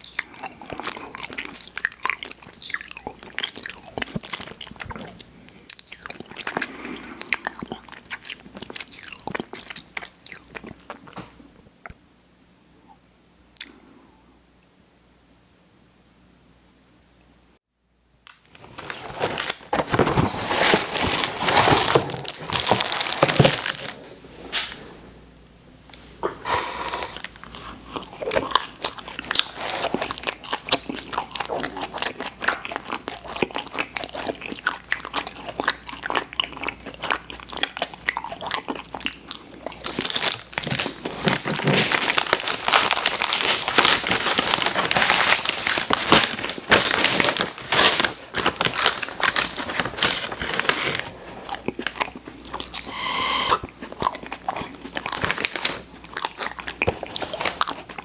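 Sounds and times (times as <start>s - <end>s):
wet sticky chewing: 0.0s - 11.2s, 26.3s - 40.2s.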